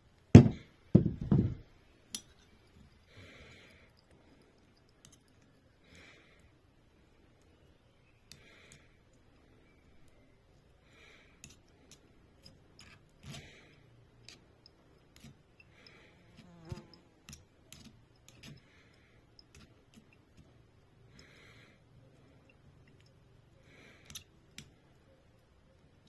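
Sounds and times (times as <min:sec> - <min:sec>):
loud knock: 0:00.4 - 0:01.6.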